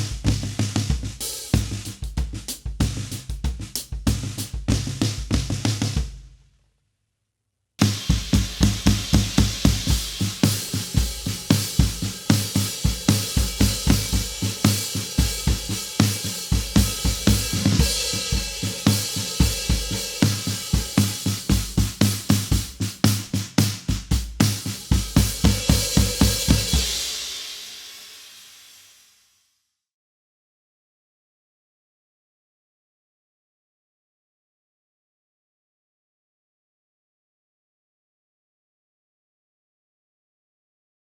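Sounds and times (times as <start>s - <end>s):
drum kit groove: 0.0s - 6.4s, 7.8s - 28.9s.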